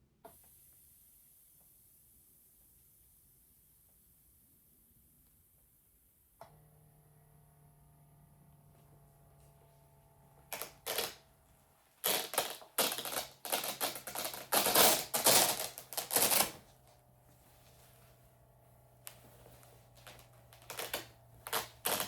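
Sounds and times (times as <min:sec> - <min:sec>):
low steady hum: 0:00.9 - 0:22.0
velcro straps ripping open: 0:10.5 - 0:11.2, 0:12.0 - 0:16.7, 0:20.0 - 0:22.0.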